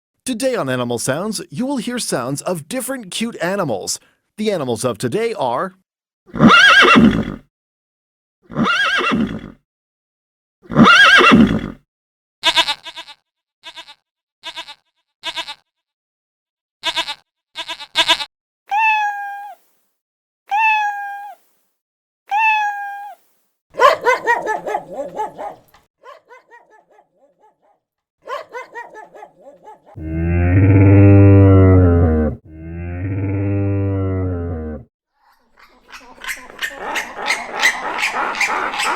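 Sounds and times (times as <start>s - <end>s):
higher-pitched animal calls: 23.8s - 27.5s
loud animal calls: 23.8s - 27.6s, 28.3s - 31.7s, 35.9s - 38.9s.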